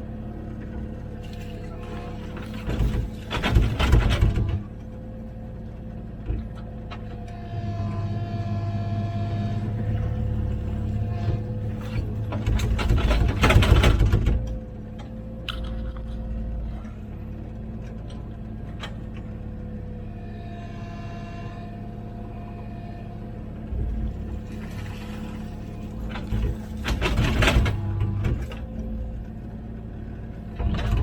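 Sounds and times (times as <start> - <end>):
excavator diesel engine running: 0.0 - 31.0
scraping rattle of digging: 1.2 - 4.7, 10.0 - 14.4, 23.8 - 28.7.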